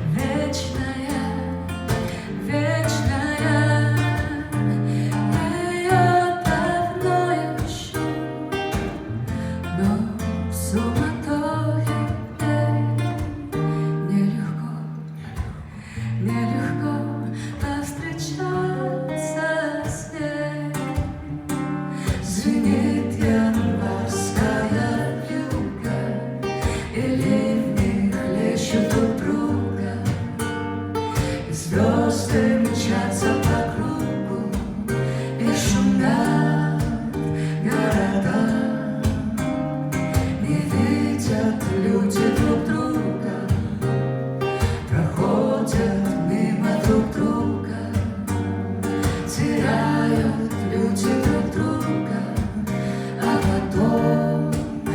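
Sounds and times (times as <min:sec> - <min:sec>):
jazz guitar playing: 0:20.6 - 0:54.9.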